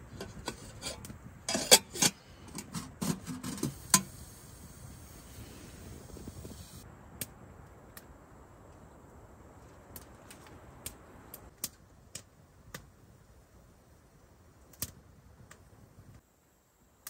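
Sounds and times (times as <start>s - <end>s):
faint low hiss: 0.0s - 17.0s
wood fire crackling and popping: 5.9s - 13.3s, 14.5s - 16.2s.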